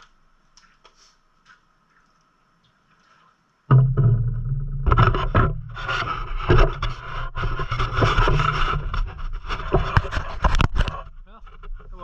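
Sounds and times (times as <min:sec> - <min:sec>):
scraping and clattering: 0:03.7 - 0:12.0.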